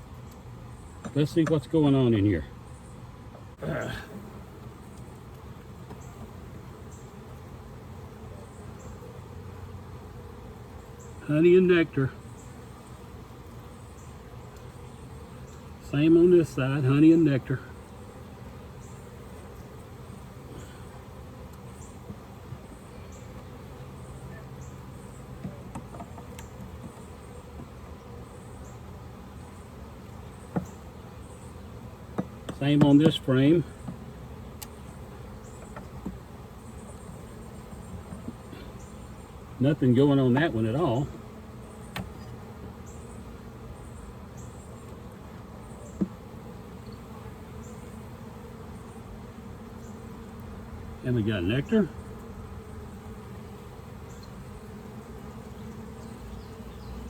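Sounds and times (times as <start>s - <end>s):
honeybees buzzing: 0.0s - 57.0s
hive frames clicking and knocking: 1.0s - 1.7s, 4.5s - 7.5s, 13.5s - 15.8s, 18.8s - 28.2s, 28.8s - 31.2s, 31.8s - 43.0s, 43.6s - 50.8s.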